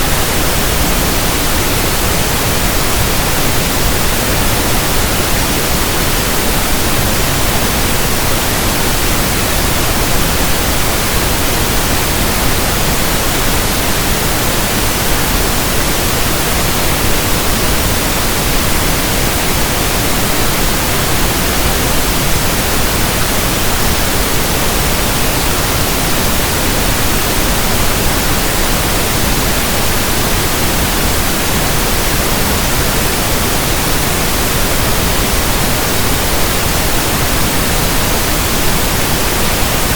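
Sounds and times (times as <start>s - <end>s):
steady pink noise hiss: 0.0s - 39.9s.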